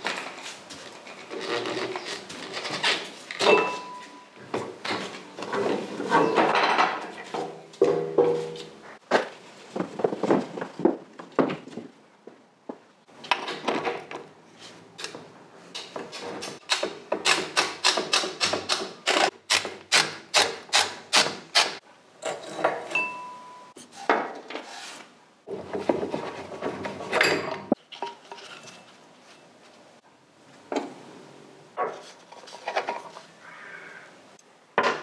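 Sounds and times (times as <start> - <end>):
hand tools clanking and scraping: 0.1 - 8.8, 21.7 - 29.5.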